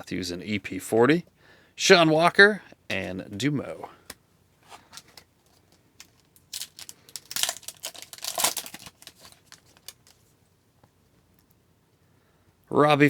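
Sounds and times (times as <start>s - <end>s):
cards rustling and clicking: 4.0s - 10.3s
foil wrapper tearing: 6.0s - 10.2s.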